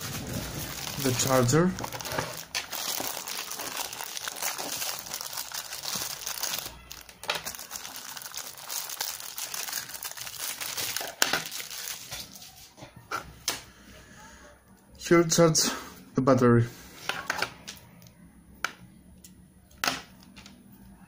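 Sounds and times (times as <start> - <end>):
packaging crinkling and rustling: 0.0 - 12.7.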